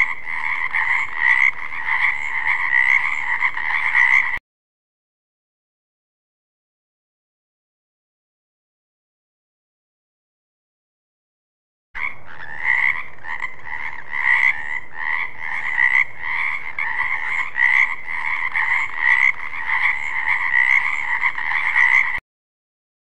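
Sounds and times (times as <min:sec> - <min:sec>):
frogs calling in chorus: 0:00.0 - 0:04.4, 0:12.0 - 0:22.2.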